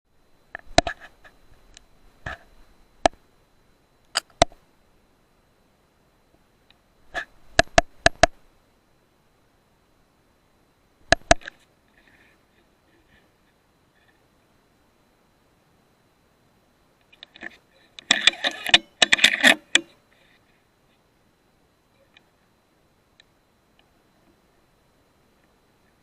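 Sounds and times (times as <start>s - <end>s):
air rifle clicks and snaps: 11.1s - 11.6s.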